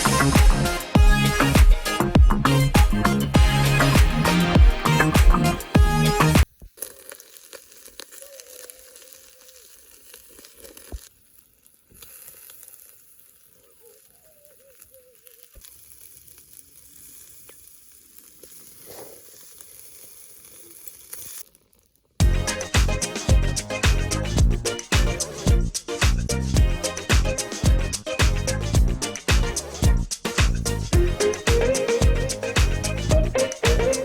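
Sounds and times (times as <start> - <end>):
food sizzling on charcoal grill: 0.0 - 34.0
faint crackles: 6.4 - 22.2.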